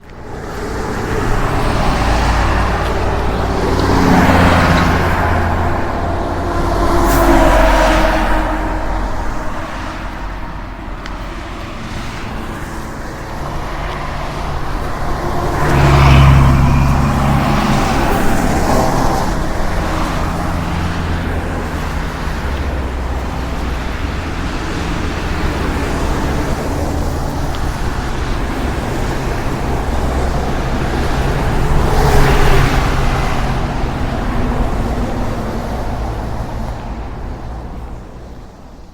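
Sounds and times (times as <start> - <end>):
truck engine running: 0.0 - 37.8
road traffic noise: 0.0 - 38.9
vehicles passing: 0.0 - 38.9.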